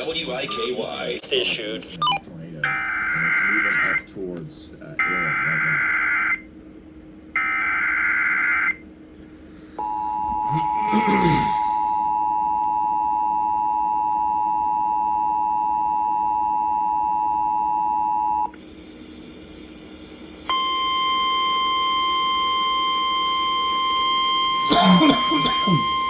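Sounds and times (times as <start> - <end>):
steady warning alarm tone: 2.0 - 6.5, 7.3 - 8.9, 9.6 - 18.6, 20.5 - 26.0.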